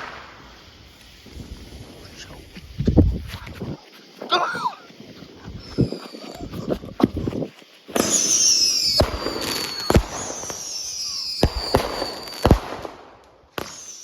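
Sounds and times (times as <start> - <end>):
firework bangs: 0.0 - 3.3, 5.5 - 14.0
falling firework whistles: 0.0 - 14.0
fireworks crackling hiss: 0.0 - 14.0.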